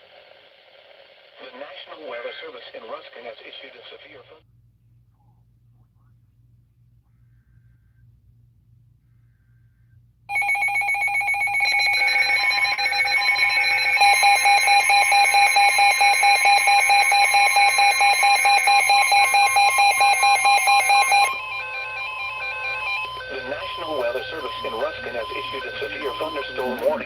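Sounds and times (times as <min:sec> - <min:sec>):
steady electronic alarm tone: 0:10.3 - 0:27.0
stepped beeping tones: 0:10.3 - 0:27.0.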